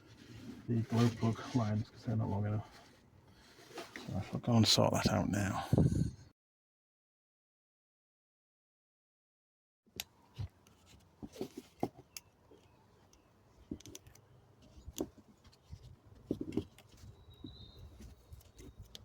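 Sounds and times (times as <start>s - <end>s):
faint high chirp: 17.0s - 18.8s.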